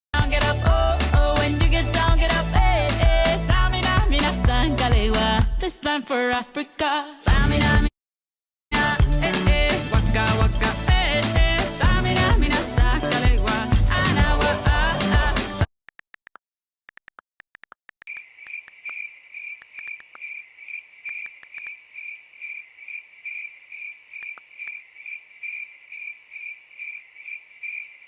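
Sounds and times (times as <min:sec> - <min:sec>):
pop song: 0:00.2 - 0:07.9, 0:08.7 - 0:15.7
cricket chirping: 0:18.1 - 0:28.0.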